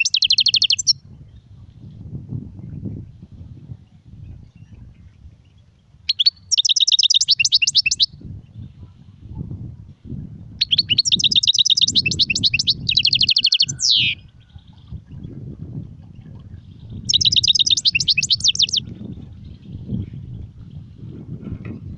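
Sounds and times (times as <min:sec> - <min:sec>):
finch singing high trills: 0:00.0 - 0:01.0, 0:06.1 - 0:08.2, 0:10.6 - 0:14.4, 0:16.8 - 0:18.9.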